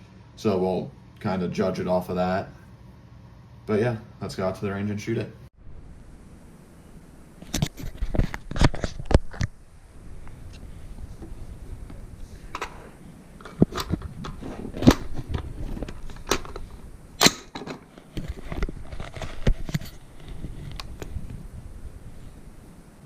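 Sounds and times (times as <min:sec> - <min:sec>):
handling clicks and knocks: 0:12.5 - 0:21.1.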